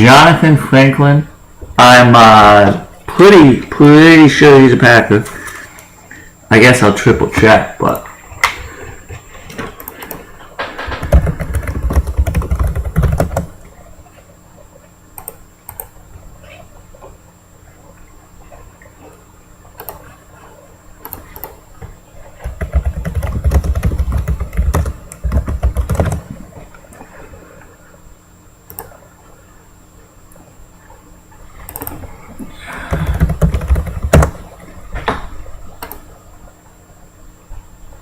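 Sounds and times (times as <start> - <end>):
keyboard typing: 10.8 - 13.6, 15.2 - 15.9, 22.4 - 26.4, 31.7 - 32.0, 32.8 - 34.4.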